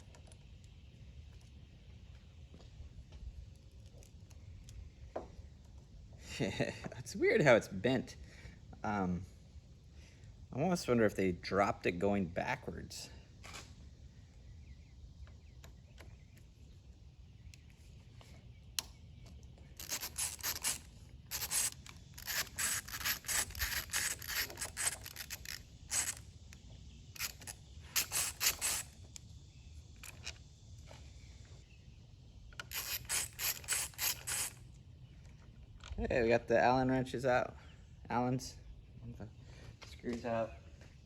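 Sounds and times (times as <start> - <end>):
allen wrench clicking and scraping: 19.8 - 26.2, 27.2 - 29.0, 30.0 - 30.4, 32.5 - 34.6.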